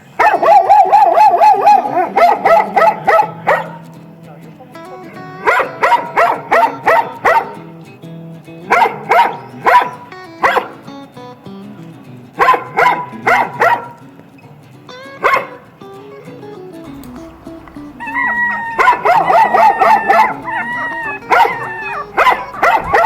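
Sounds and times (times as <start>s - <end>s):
dog barking: 0.1s - 4.0s, 5.4s - 7.7s, 8.7s - 10.9s, 12.4s - 14.0s, 15.2s - 15.6s, 16.9s - 23.0s
background music: 16.8s - 23.0s.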